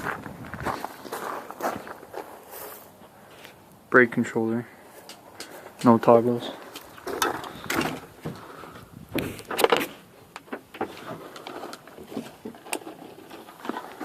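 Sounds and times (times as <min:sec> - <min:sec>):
knocks and scraping in a van: 0:07.0 - 0:14.0.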